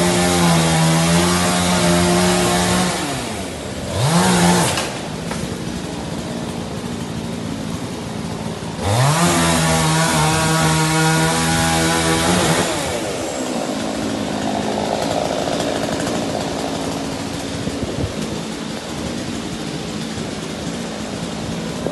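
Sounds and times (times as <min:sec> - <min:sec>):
chainsaw revving: 0:00.0 - 0:21.9
steady rushing noise: 0:09.8 - 0:21.9.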